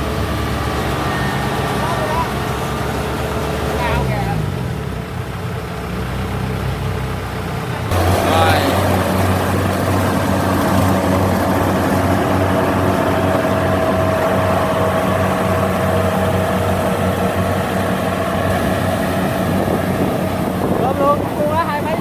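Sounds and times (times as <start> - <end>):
combine harvester diesel hum: 0.0 - 22.0
high whine: 7.9 - 22.0.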